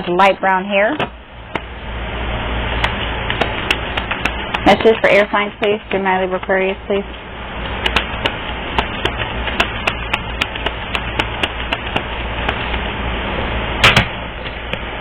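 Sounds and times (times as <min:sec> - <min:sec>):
cards being shuffled: 0:02.8 - 0:06.7, 0:07.7 - 0:12.9.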